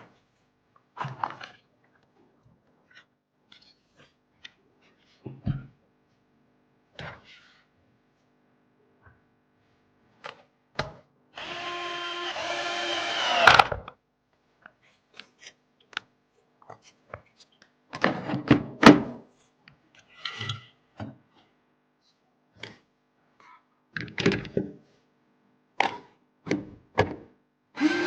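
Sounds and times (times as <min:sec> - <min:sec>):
electric screwdriver whirring: 0:11.4 - 0:13.7, 0:27.8 - 0:28.0.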